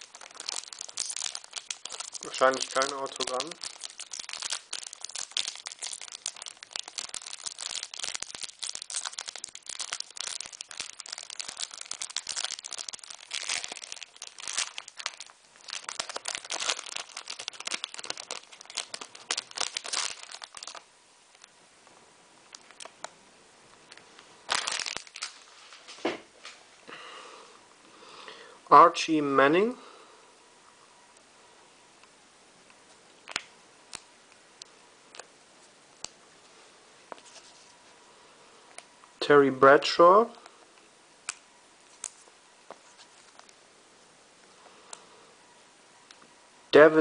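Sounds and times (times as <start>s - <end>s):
card packaging crinkling and tearing: 0.0s - 21.4s, 23.9s - 26.0s, 33.2s - 34.0s.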